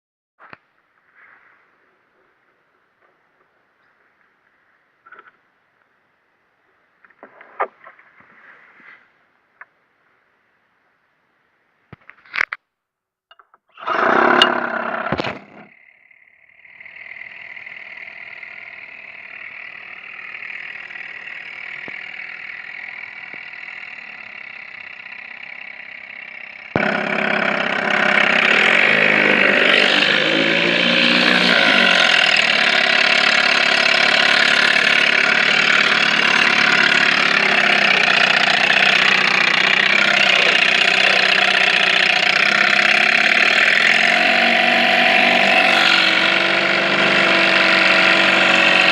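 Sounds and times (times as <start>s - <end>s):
outboard motor running: 13.8s - 48.9s.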